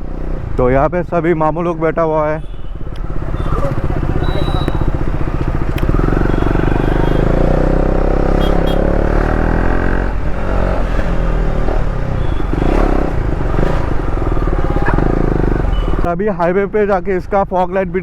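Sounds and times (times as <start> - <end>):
motorcycle engine accelerating: 3.0 - 16.1.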